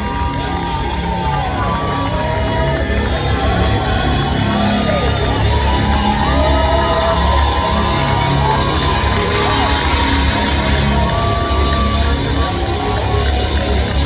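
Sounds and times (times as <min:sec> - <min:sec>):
crowd shouting and whooping: 0:00.0 - 0:14.0
funk band playing over pa: 0:00.0 - 0:14.0
heavy bass line: 0:00.0 - 0:14.0.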